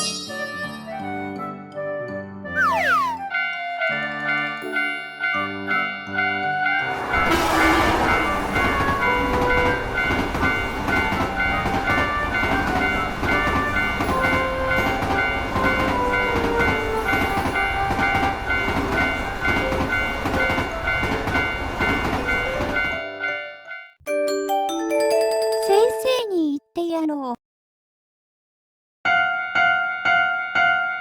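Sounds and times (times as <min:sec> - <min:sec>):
tune playing: 0:02.6 - 0:03.4
railroad crossing bell ringing: 0:04.3 - 0:26.0
train rumbling over rails: 0:06.5 - 0:23.2.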